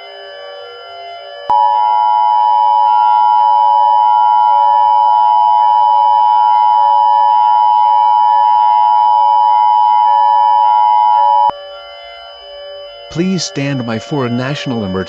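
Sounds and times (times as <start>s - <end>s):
two-tone alarm signal: 0.0s - 15.0s.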